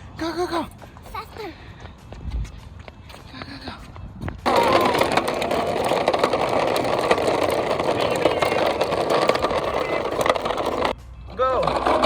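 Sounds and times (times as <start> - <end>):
toy truck wheels rumbling: 4.5 - 11.0, 11.6 - 12.0.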